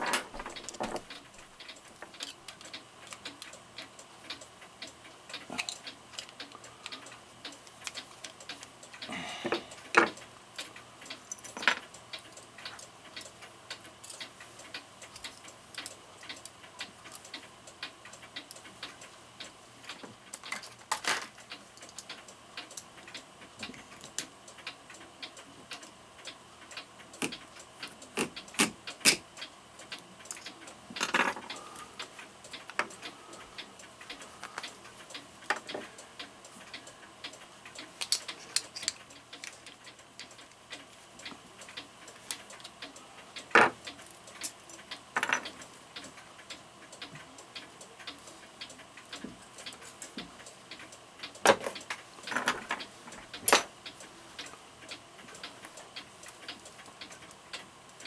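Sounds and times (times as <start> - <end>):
mechanical clock ticking: 0.0 - 58.0.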